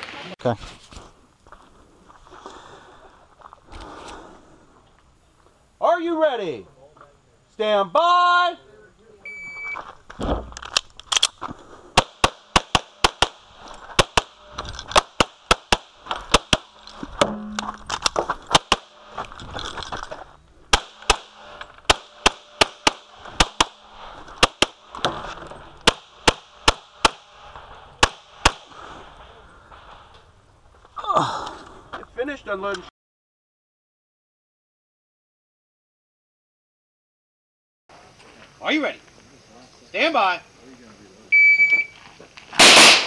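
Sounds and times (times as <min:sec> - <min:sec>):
pistol shots: 0:12.0 - 0:16.8, 0:18.5 - 0:19.0, 0:20.7 - 0:23.8, 0:24.4 - 0:25.1, 0:25.8 - 0:28.8, 0:42.6 - 0:43.0.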